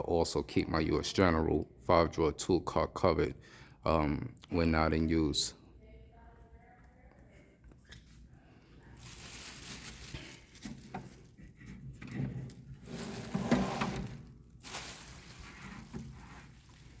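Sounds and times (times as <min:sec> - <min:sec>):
rustling and sliding handling: 0:08.0 - 0:17.0.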